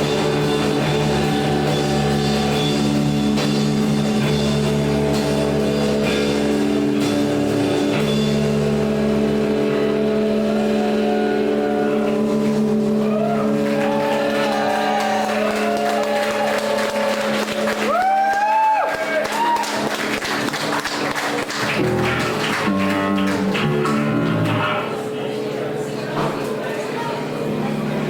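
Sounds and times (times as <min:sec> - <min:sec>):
live band playing: 0:00.0 - 0:14.2, 0:20.0 - 0:25.3
held guitar tones: 0:21.7 - 0:28.0.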